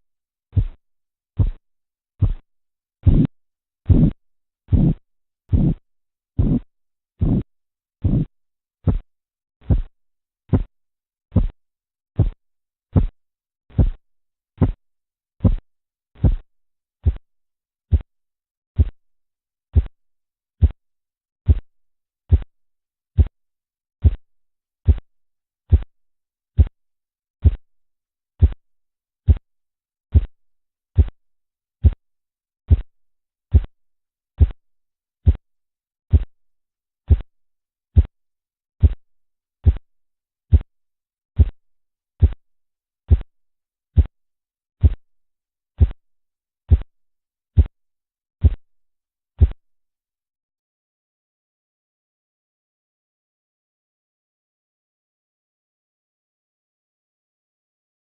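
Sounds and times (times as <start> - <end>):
pulse taps through stethoscope: 0.5 - 0.8, 1.4 - 1.6, 2.2 - 2.4, 3.0 - 3.3, 3.9 - 5.8, 6.4 - 9.9, 10.5 - 10.7, 11.3 - 11.6, 12.2 - 14.0, 14.6 - 14.8, 15.4 - 15.6, 16.2 - 16.4, 17.0 - 17.2, 18.8 - 19.0, 19.7 - 19.9, 20.6 - 20.8, 23.2 - 23.4, 26.6 - 26.8, 27.4 - 27.6, 28.4 - 28.6, 30.1 - 30.3, 31.0 - 31.2, 32.7 - 32.9, 33.5 - 33.7, 35.2 - 35.4, 36.1 - 36.3, 37.1 - 37.3, 38.8 - 39.0, 39.6 - 39.8, 41.4 - 41.6, 42.2 - 42.4, 43.1 - 43.3, 44.8 - 45.0, 46.7 - 46.9.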